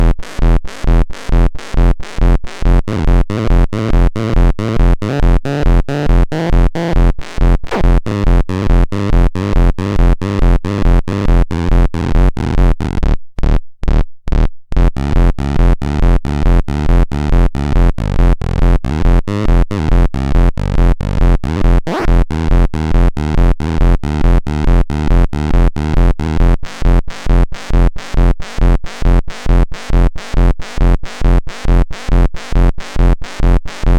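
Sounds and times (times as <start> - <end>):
electronic dance beat: 7.7 - 8.1, 21.8 - 22.2
synthesizer tones: 21.8 - 22.1.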